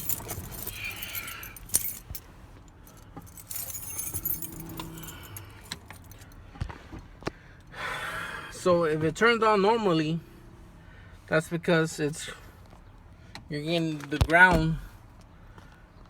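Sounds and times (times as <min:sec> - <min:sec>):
keys jangling on key ring: 0:00.0 - 0:06.4.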